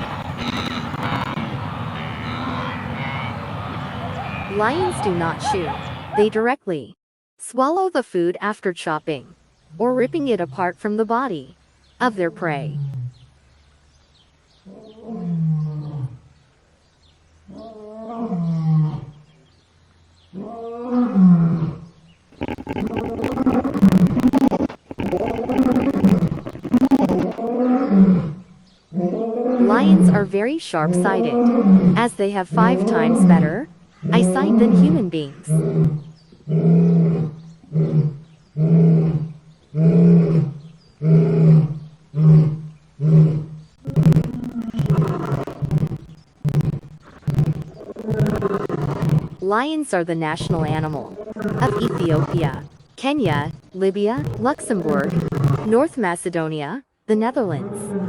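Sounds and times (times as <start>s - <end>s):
lion roaring: 0.0s - 6.3s, 20.3s - 30.2s, 31.0s - 49.4s, 50.4s - 55.8s.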